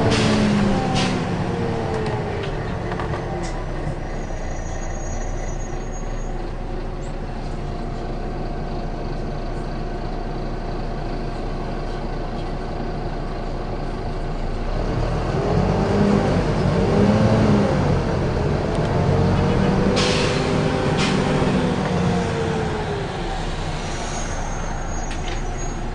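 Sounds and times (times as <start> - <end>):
bus engine droning: 0.0 - 25.9.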